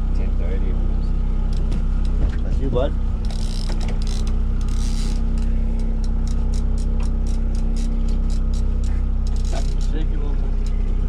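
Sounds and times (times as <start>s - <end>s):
boat engine running: 0.0s - 11.0s
fishing reel ratchet clicking: 3.2s - 10.0s.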